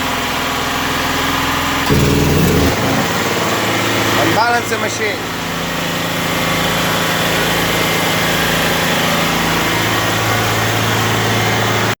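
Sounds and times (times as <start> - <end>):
machinery humming: 1.8 - 6.4.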